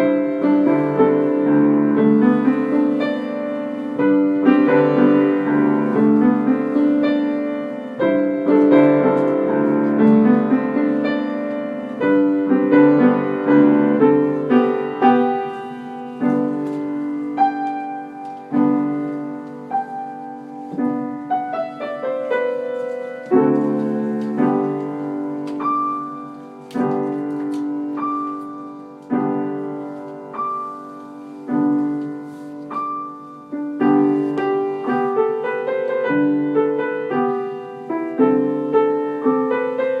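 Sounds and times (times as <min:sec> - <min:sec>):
solo piano music: 0:00.0 - 0:40.0.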